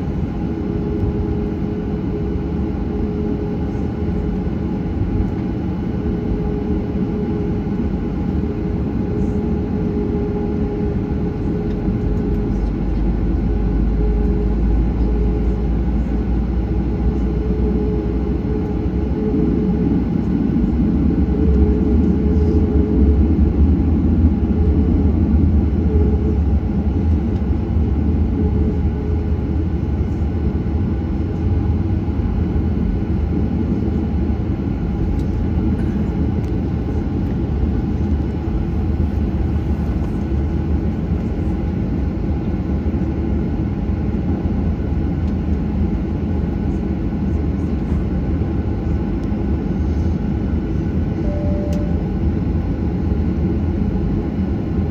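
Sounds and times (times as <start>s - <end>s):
jet cabin rumble: 0.0s - 54.9s.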